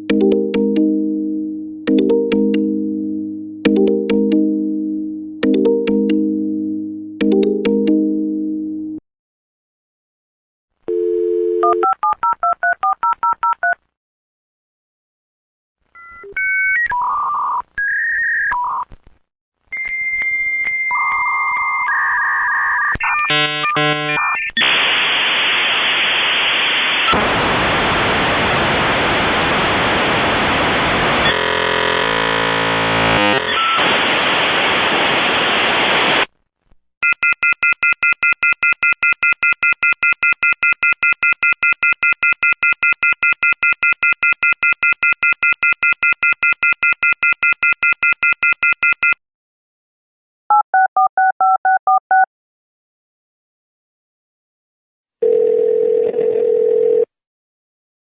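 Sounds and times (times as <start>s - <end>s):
keypad beeps: 37.0s - 49.2s, 50.5s - 52.3s.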